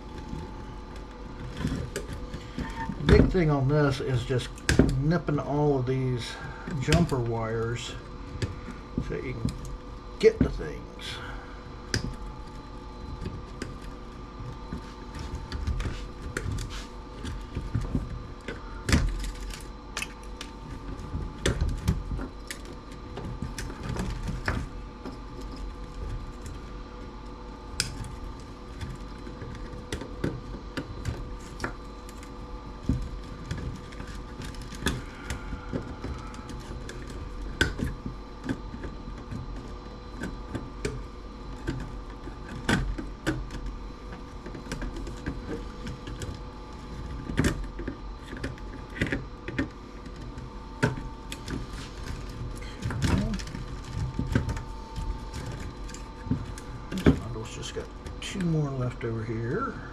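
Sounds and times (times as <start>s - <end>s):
steady hum: 0.0s - 59.9s.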